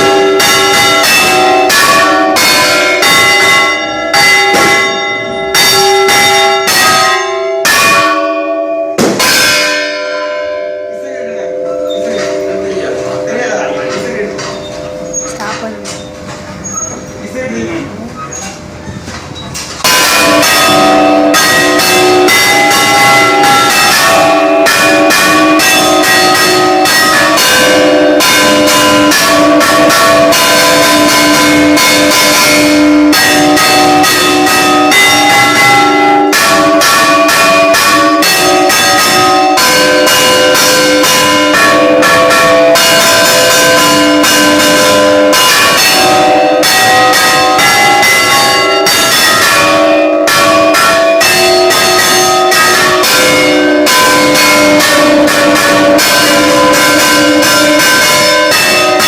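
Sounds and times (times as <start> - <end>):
church bells pealing: 0.0 - 18.2, 19.7 - 59.0.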